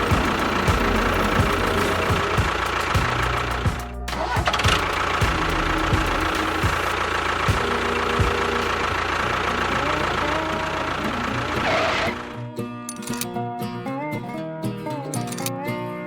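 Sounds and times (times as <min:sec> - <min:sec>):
small motor running: 0:00.0 - 0:12.4.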